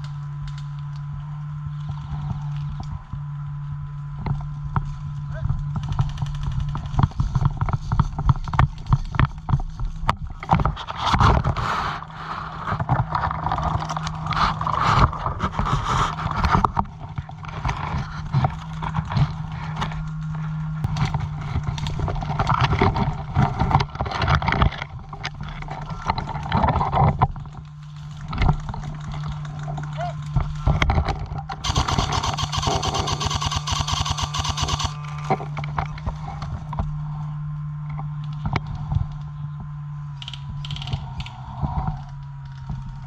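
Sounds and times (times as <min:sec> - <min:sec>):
gear rustling: 0:31.6 - 0:35.0
sharp clicks and knocks: 0:31.6 - 0:35.0
steady low hum: 0:31.6 - 0:35.4.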